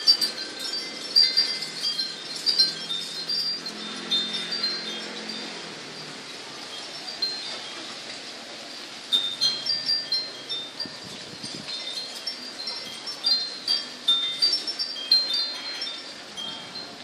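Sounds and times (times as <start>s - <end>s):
wind chimes ringing: 0.0s - 17.0s.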